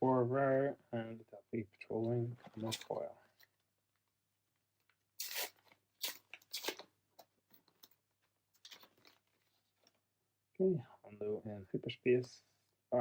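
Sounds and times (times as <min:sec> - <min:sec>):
wrapper crinkling: 0:05.2 - 0:06.9
wrapper tearing: 0:05.2 - 0:06.9.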